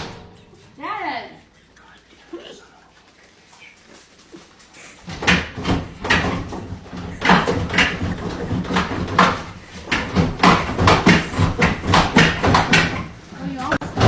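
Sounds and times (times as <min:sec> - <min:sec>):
microwave being banged: 0:00.0 - 0:00.7, 0:05.1 - 0:14.0.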